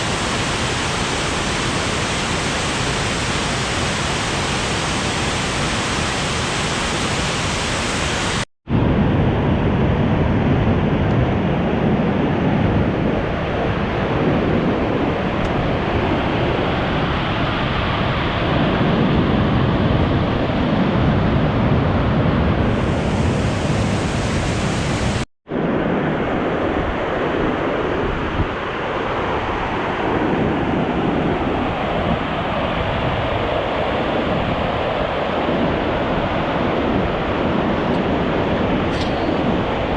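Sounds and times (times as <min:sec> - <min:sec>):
waterfall rushing: 0:00.0 - 0:08.5, 0:22.7 - 0:25.2.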